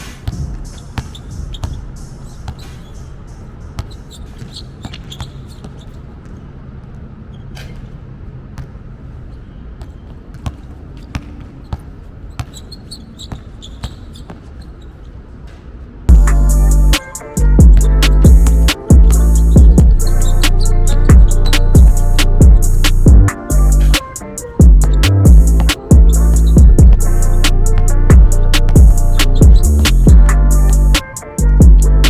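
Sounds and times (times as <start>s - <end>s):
basketball bouncing on a court: 0.0s - 8.0s, 8.6s - 8.8s, 9.8s - 14.8s, 17.0s - 32.0s
loud music: 16.1s - 32.0s.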